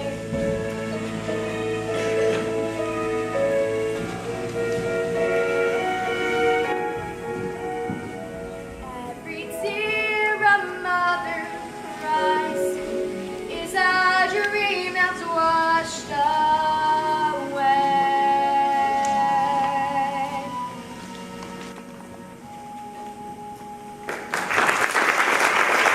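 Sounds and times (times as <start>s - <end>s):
woman singing: 0.0s - 2.6s, 8.8s - 20.9s
instrumental accompaniment: 0.0s - 25.0s.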